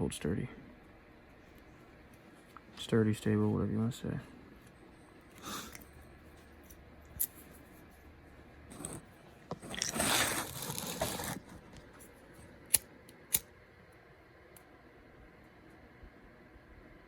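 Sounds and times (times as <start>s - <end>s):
tearing rustle: 8.7s - 11.9s.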